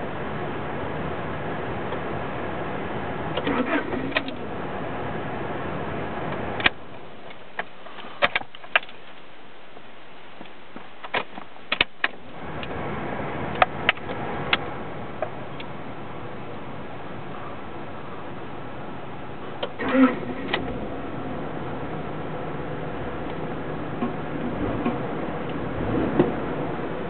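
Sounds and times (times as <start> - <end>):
car engine running: 0.0 - 27.0
sharp clicks and knocks: 6.3 - 12.8.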